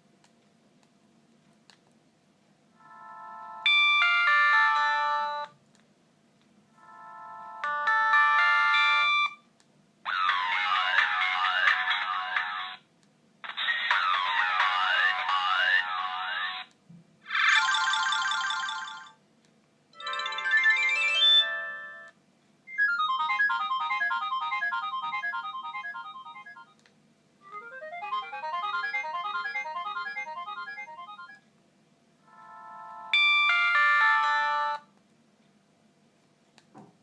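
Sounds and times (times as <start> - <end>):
polyphonic phone ringtones: 6.8 - 9.4, 17.3 - 19.2, 20.0 - 22.1, 22.7 - 26.8, 27.5 - 31.4, 32.3 - 34.8.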